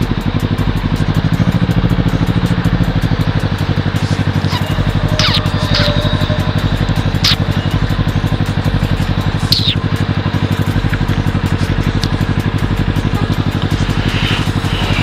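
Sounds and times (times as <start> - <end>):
motorcycle engine idling: 0.0 - 15.0
high-pitched squeaks: 4.0 - 8.5, 9.2 - 9.9.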